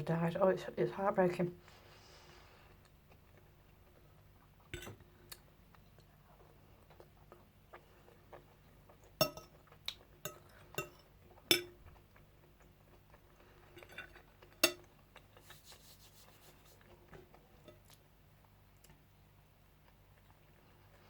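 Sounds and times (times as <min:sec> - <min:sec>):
cutlery clinking against a plate: 0:04.8 - 0:05.0, 0:09.2 - 0:09.6, 0:10.3 - 0:11.8, 0:13.7 - 0:14.9.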